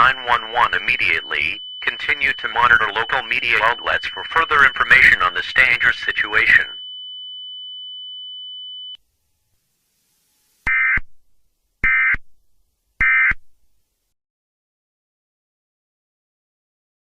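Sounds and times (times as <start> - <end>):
high electronic tone: 0.0 - 6.8.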